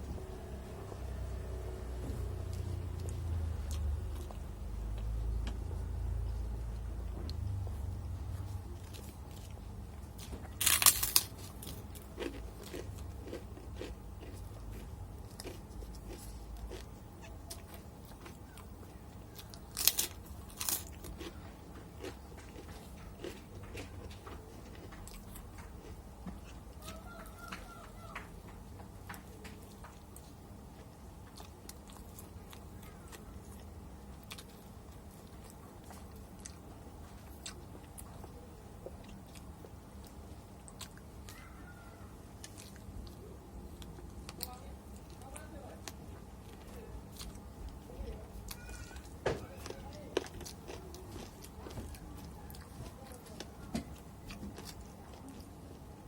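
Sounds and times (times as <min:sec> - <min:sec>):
close-up chewing: 0:00.0 - 0:56.0
small crisp crackles: 0:08.3 - 0:55.8
crunchy bite into fried chicken: 0:10.2 - 0:16.9.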